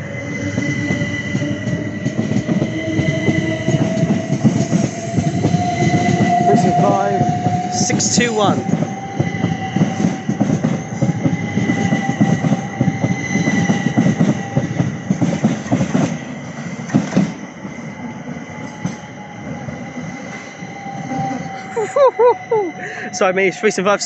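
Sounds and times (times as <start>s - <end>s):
electric train whine: 0.0s - 24.0s
train wheels clattering over rail joints: 0.6s - 17.4s.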